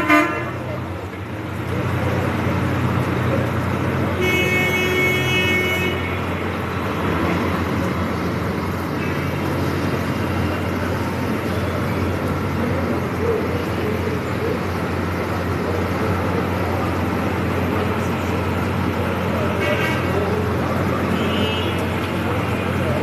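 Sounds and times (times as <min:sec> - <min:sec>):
car horn: 0:00.0 - 0:00.6, 0:04.2 - 0:06.3, 0:21.1 - 0:21.8
road traffic noise: 0:00.0 - 0:23.0.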